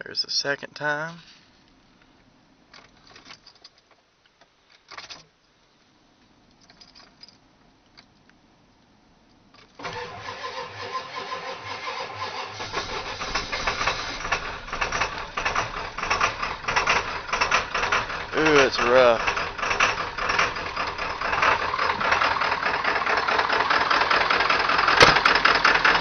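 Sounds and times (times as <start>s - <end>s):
diesel engine running rough: 9.8s - 26.0s.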